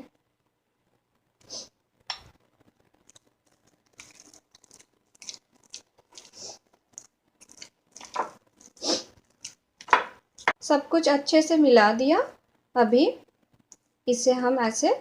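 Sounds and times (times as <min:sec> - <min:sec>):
mixture being mixed in bowl: 0:03.0 - 0:09.6.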